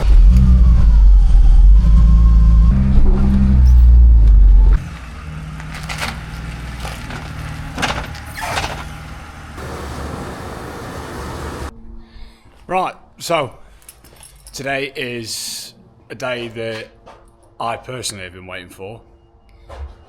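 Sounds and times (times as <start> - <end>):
car engine running: 0.0 - 11.7.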